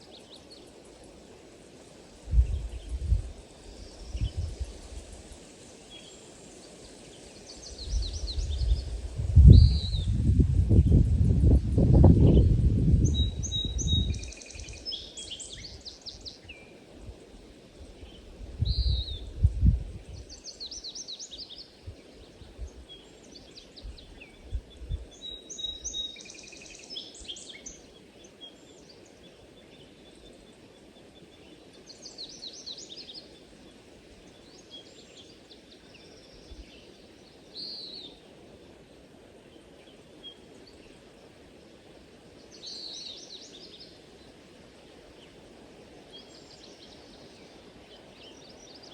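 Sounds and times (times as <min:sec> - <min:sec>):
small birds chirping and trilling: 0:02.3 - 0:16.8, 0:46.1 - 0:48.9.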